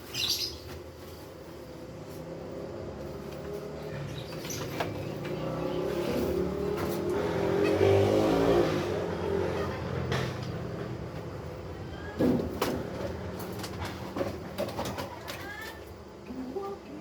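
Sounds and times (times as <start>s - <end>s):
vehicle engine passing: 1.6s - 11.8s.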